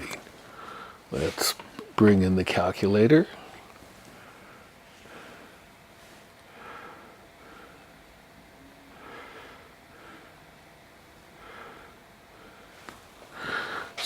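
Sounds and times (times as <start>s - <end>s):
breathing through the nose: 0.4s - 1.0s, 11.4s - 14.0s.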